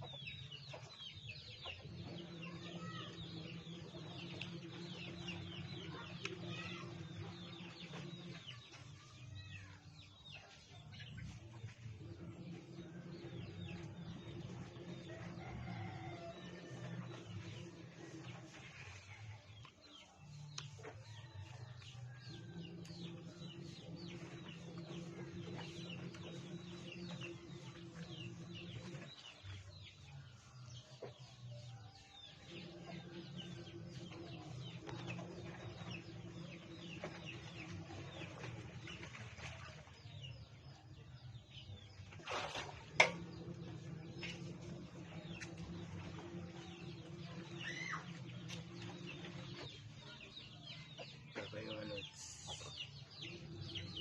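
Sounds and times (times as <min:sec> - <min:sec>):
chickens clucking and chirping: 0:00.0 - 0:54.0
low hum: 0:10.9 - 0:19.7, 0:21.9 - 0:30.5, 0:32.3 - 0:40.8, 0:41.4 - 0:50.9, 0:52.2 - 0:54.0.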